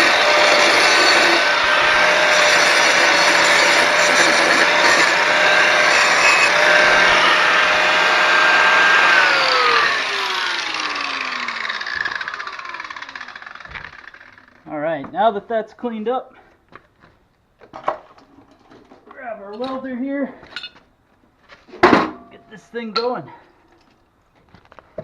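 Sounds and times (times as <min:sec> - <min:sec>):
grinder whine spinning down: 0:00.0 - 0:14.6
angle grinder grinding metal: 0:00.0 - 0:14.7.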